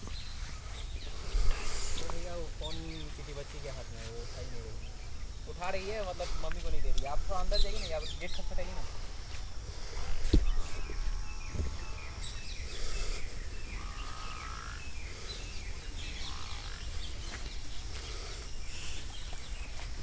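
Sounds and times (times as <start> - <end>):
birds chirping: 0.0 - 20.0
sharp thump: 10.3 - 10.6.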